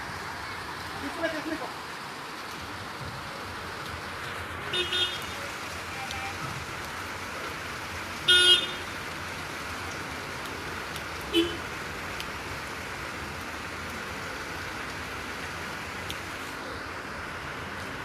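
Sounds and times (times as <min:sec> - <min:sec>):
steady rain: 0:00.0 - 0:18.0.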